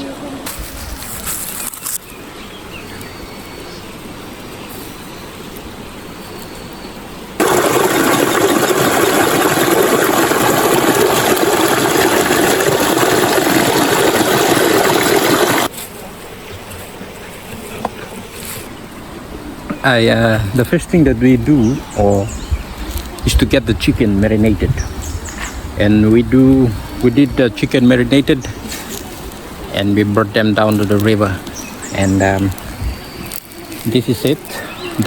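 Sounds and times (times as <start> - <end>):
rushing river water: 7.4 - 15.7.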